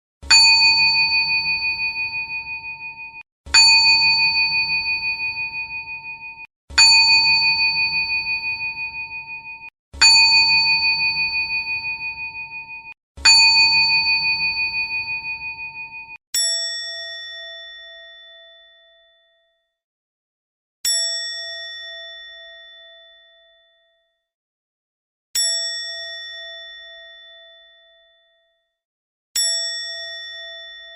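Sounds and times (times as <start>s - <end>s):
lower-pitched bell struck: 0.2s - 16.2s
small struck bell ringing: 0.3s - 16.2s.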